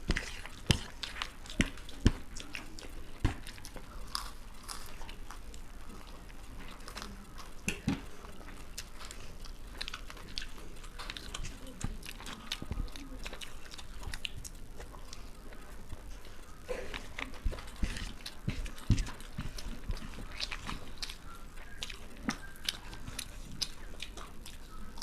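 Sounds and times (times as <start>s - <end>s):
people chewing crunchy food: 0.0s - 25.0s.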